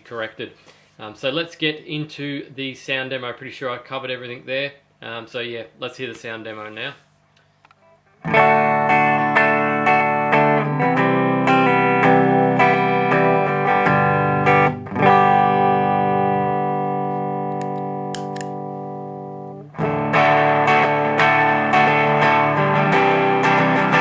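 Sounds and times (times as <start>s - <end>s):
distorted electric guitar riffs: 7.8s - 24.0s
guitar chord ringing: 7.8s - 24.0s.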